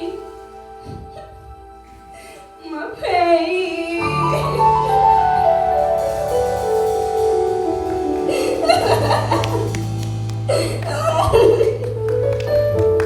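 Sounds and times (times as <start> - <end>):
sustained keyboard notes: 0.0 - 13.0
steady bass note: 4.2 - 12.4.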